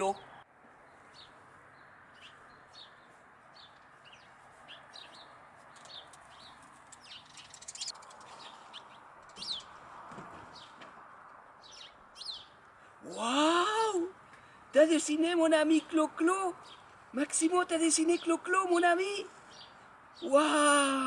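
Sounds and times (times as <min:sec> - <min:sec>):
small birds chirping: 0:00.0 - 0:10.9, 0:11.6 - 0:20.9
bird rapid rattle: 0:05.7 - 0:09.7.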